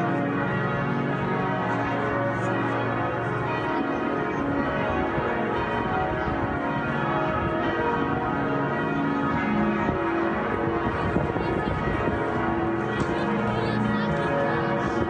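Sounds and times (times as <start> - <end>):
church bells pealing: 0.0 - 15.0.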